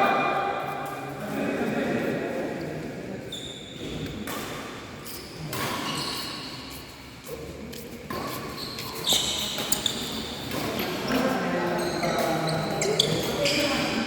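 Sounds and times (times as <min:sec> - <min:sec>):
shoes squeaking on floor: 0:03.3 - 0:04.2, 0:05.0 - 0:07.1, 0:08.1 - 0:14.0.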